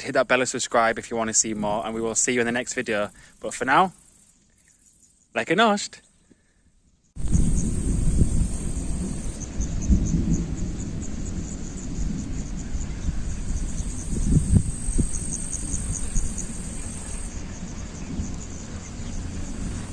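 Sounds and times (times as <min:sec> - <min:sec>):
insects chirping: 0:00.0 - 0:19.9
wind rumbling on microphone: 0:07.2 - 0:19.9.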